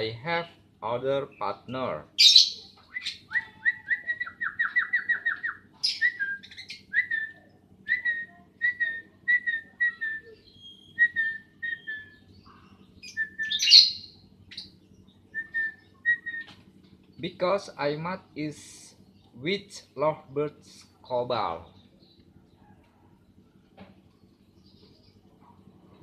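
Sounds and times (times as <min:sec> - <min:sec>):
lovebirds chirping: 0:00.0 - 0:26.0
shrill bird calls: 0:02.2 - 0:16.6.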